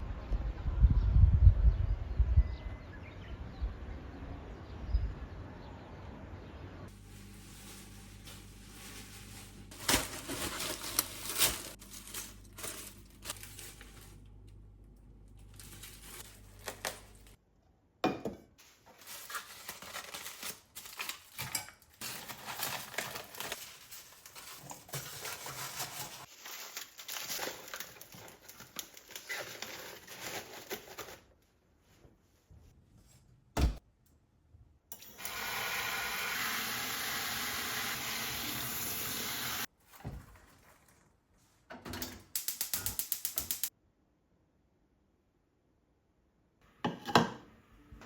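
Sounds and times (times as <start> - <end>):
wrappings crinkling and rustling: 6.9 - 14.6, 15.3 - 17.4, 18.6 - 31.4.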